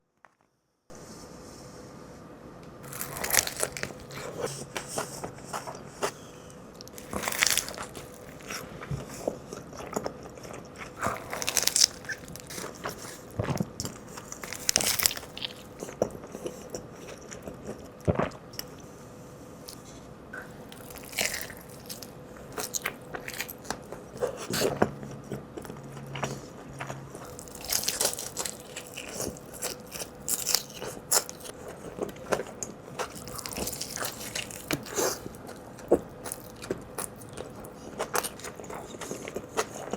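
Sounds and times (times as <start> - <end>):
crisp crunches: 2.8 - 6.2, 6.8 - 17.2, 20.5 - 24.7, 26.2 - 39.9
person chewing food: 2.8 - 19.0, 19.6 - 39.9.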